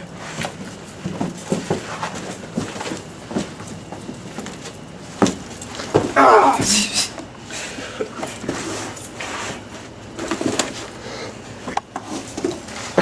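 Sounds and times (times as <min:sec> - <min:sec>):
scuffling and clothing rustle: 0:00.0 - 0:06.9
people grunting: 0:06.1 - 0:08.2.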